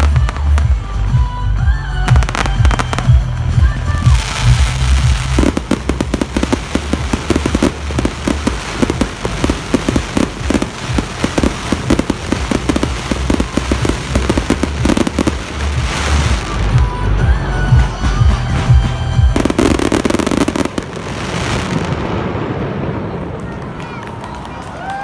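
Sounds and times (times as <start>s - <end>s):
fireworks crackling: 0.0s - 25.0s.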